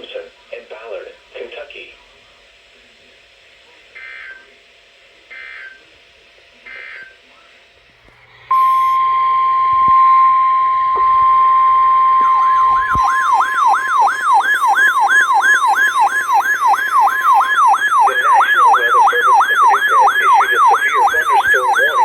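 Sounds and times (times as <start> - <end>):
warbling electronic siren: 8.5 - 22.0
warning alarm tone: 8.5 - 22.0.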